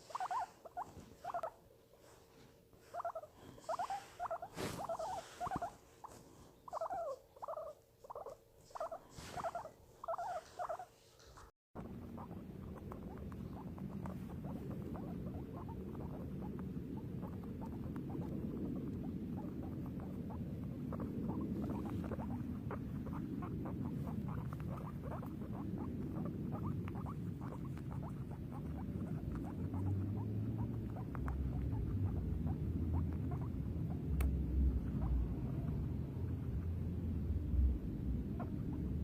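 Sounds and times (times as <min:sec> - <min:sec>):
guinea pig squeaking: 0:00.0 - 0:02.2, 0:02.8 - 0:39.0
low background rumble: 0:11.4 - 0:39.0.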